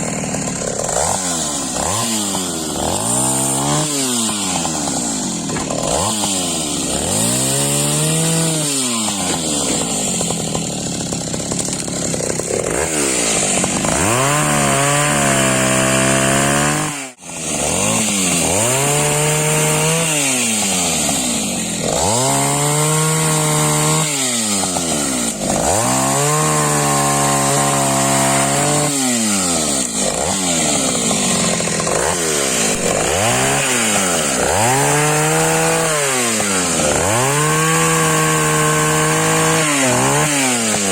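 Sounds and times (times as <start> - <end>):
chainsaw revving while cutting logs: 0.0 - 40.9.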